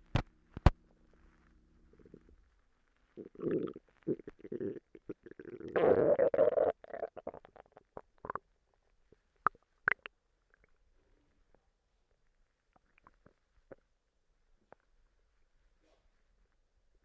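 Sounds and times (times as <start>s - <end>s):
stomach gurgling: 3.1s - 8.5s, 9.1s - 10.8s, 12.7s - 13.9s.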